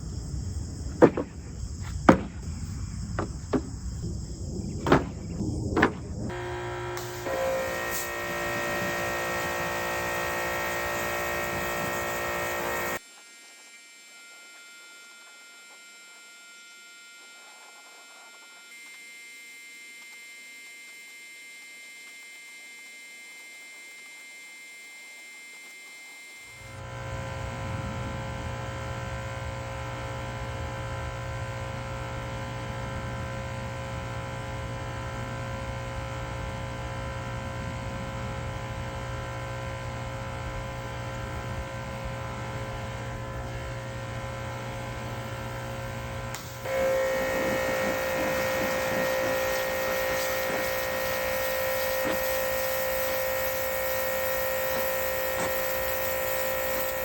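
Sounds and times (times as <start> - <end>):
pressure washer humming: 1.0 - 1.5, 3.2 - 3.8, 4.8 - 13.0, 41.4 - 57.0
water spraying hiss: 46.6 - 57.0.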